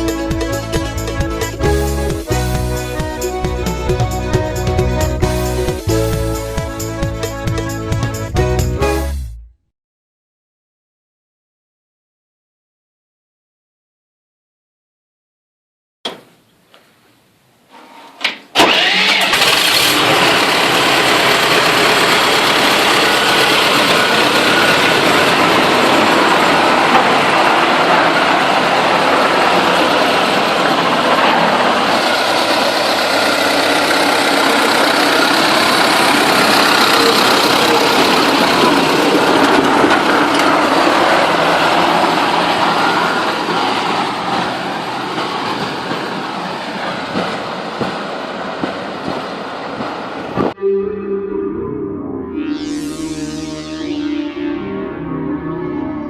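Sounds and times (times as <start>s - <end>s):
tractor diesel engine running: 0.0s - 8.9s, 18.6s - 50.6s.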